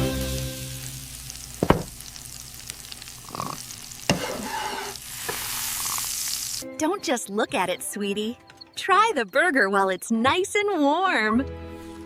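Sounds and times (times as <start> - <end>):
food sizzling in a pan: 0.0 - 6.6.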